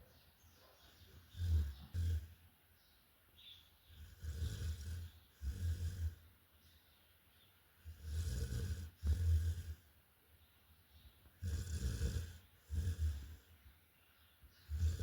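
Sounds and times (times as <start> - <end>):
dog snoring loudly: 1.1 - 2.4, 3.9 - 6.2, 7.8 - 9.9, 11.4 - 13.5, 14.6 - 15.0.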